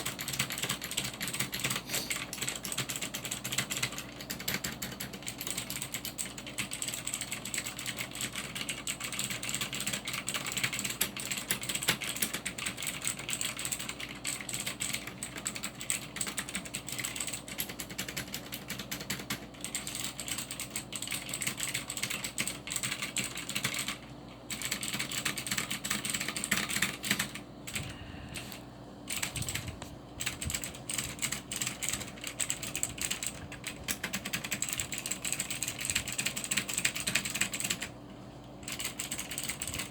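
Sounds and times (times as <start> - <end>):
mechanical keyboard typing: 0.0 - 38.0, 38.6 - 39.9.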